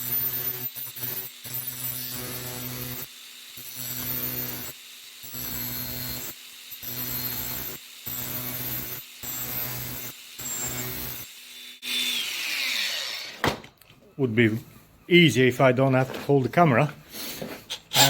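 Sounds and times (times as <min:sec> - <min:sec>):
angle grinder cutting metal: 0:00.0 - 0:13.4, 0:17.7 - 0:18.0.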